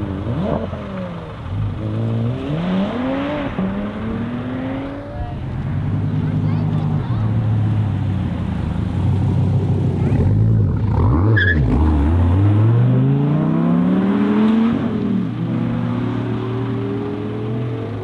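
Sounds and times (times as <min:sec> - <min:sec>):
sports car engine accelerating: 0:00.0 - 0:18.0.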